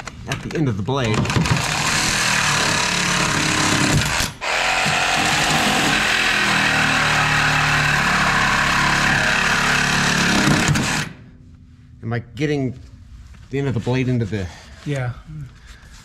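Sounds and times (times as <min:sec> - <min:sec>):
reciprocating saw cutting steel: 0:01.7 - 0:11.2.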